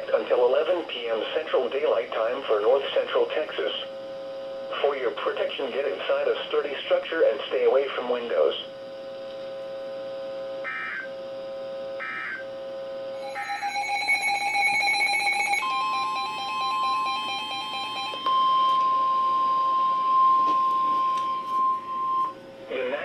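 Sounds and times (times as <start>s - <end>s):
single-pitch warning alarm tone: 10.1s - 11.3s, 11.9s - 22.6s
steady electronic tone: 10.1s - 22.5s
overlapping alert signals: 12.0s - 12.4s.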